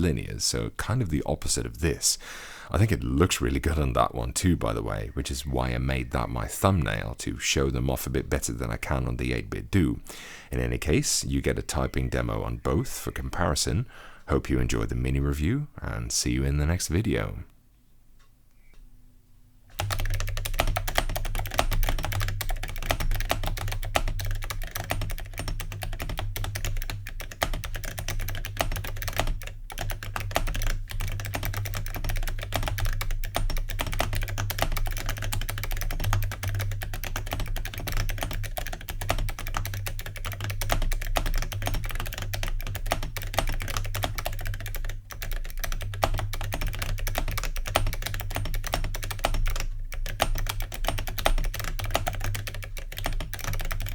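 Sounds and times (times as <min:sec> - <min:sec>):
fast clicky keyboard typing: 0:19.8 - 0:53.9.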